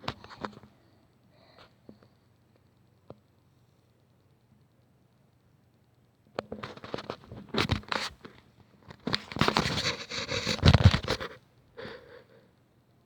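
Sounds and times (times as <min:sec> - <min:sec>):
rustling and crinkling: 0:06.4 - 0:11.4.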